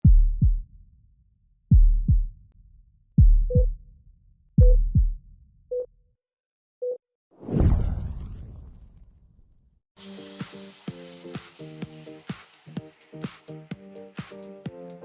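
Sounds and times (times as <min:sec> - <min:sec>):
deep falling heartbeat thumps: 0:00.0 - 0:00.7, 0:01.7 - 0:02.4, 0:03.2 - 0:03.8, 0:04.6 - 0:05.3.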